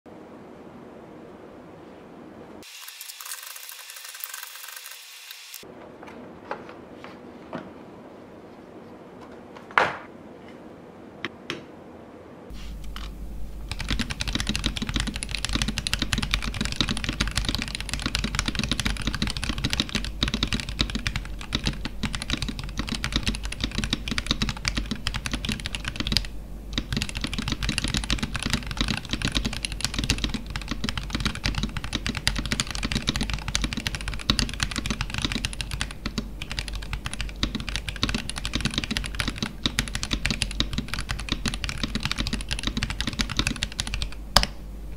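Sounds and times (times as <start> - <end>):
mechanical keyboard typing: 13.7 - 44.5.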